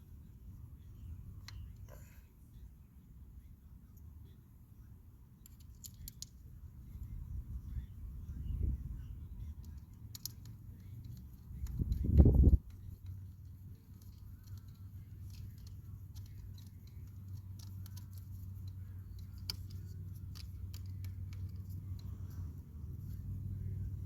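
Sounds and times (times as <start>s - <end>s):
low steady hum: 0.0s - 24.0s
hand tool clicks and taps: 9.6s - 13.2s.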